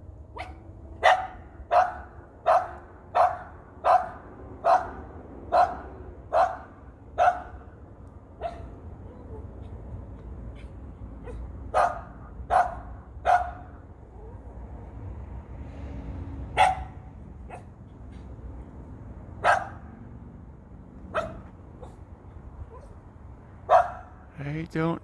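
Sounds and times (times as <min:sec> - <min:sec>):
dog barking: 0:00.4 - 0:07.6, 0:08.4 - 0:08.8, 0:10.5 - 0:13.8, 0:16.6 - 0:17.7, 0:19.4 - 0:19.9, 0:21.1 - 0:22.0, 0:23.7 - 0:24.2.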